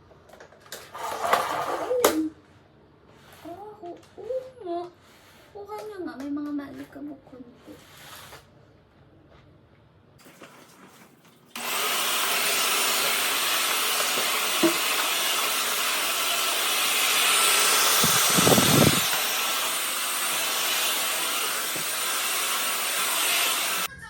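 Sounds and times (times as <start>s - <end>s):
vacuum cleaner running: 11.6s - 23.9s.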